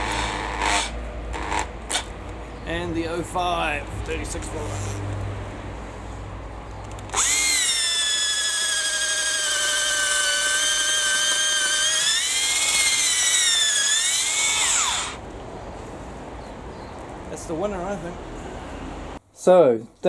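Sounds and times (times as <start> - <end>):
rotary hammer motor whining: 0.0 - 2.1, 7.1 - 15.2.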